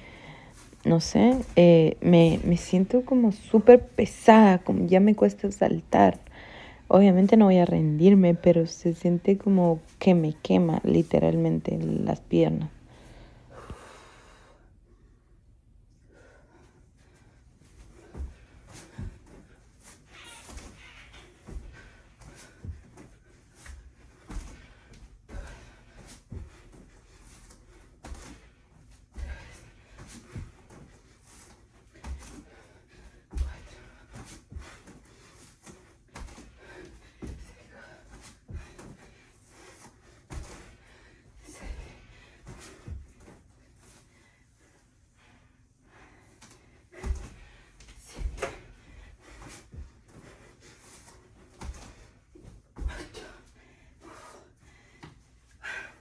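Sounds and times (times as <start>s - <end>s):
hard breathing: 0.0s - 0.8s, 6.2s - 6.9s
thuds of hands and feet on floor: 20.5s - 27.0s, 31.9s - 32.6s, 33.2s - 35.0s, 35.6s - 39.2s, 40.2s - 40.8s, 46.9s - 50.4s, 51.0s - 53.4s.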